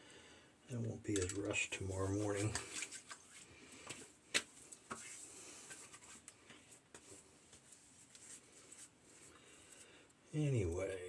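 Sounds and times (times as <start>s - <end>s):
small objects clicking and tapping: 1.1s - 1.4s.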